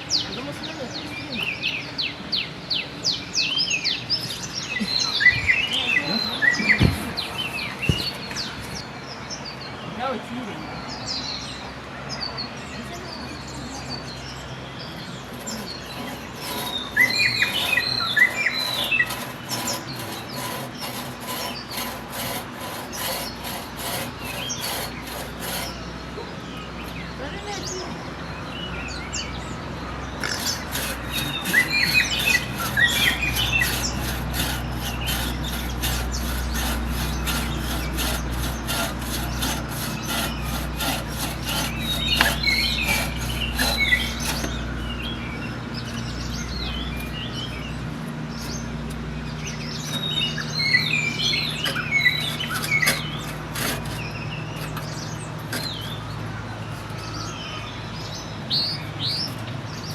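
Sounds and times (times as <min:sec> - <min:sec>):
birds chirping: 0:00.0 - 0:59.9
rhythmic scraping strokes: 0:15.2 - 0:25.8, 0:30.2 - 0:44.7, 0:51.2 - 0:56.0.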